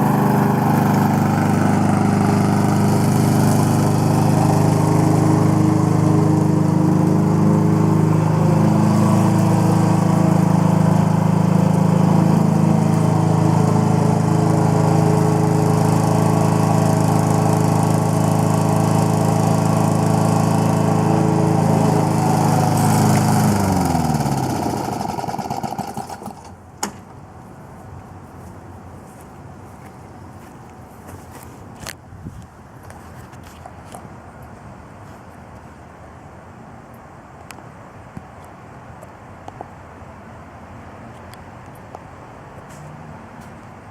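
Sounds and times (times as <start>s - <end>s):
lawn mower engine running: 0.0s - 27.2s.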